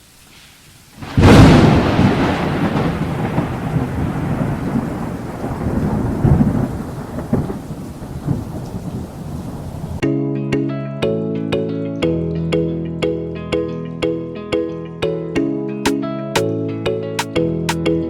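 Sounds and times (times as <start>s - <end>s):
thunder rumbling: 1.0s - 10.0s
music with bell-like mallet notes: 10.0s - 18.0s.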